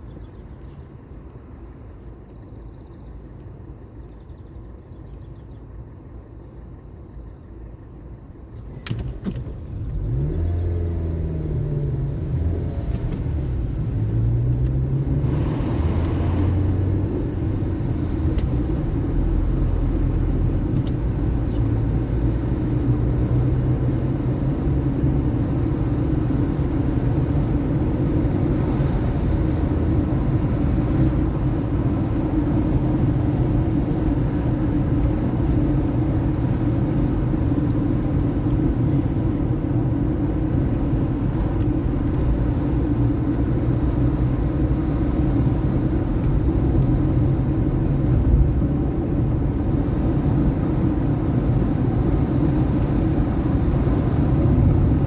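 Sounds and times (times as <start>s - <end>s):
car engine and tyre rumble: 0.0s - 55.0s.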